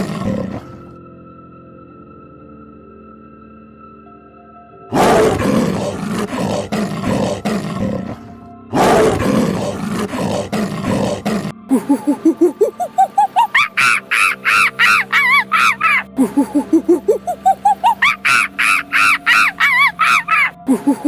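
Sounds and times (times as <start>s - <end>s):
large animal roaring: 0.0s - 0.9s, 4.9s - 11.6s
background music: 0.0s - 21.0s
short calls rising in pitch: 12.6s - 16.1s.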